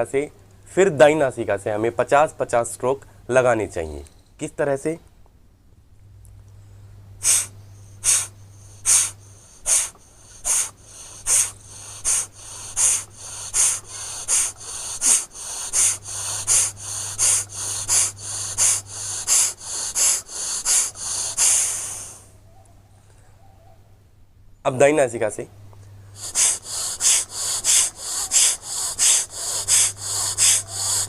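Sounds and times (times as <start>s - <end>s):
forceful nasal exhalations: 7.2s - 22.4s, 26.0s - 31.0s.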